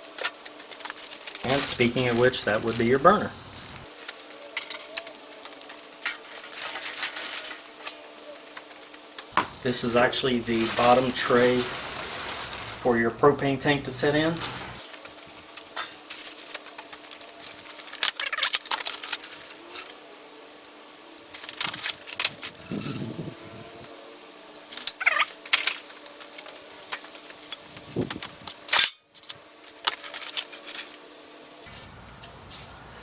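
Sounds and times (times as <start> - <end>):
faint steady hum: 0.0 - 33.0
metal parts clinking and knocking: 4.5 - 5.2, 15.8 - 23.9, 24.6 - 31.7
packing rustling: 10.5 - 12.9, 14.3 - 20.0, 24.6 - 31.7.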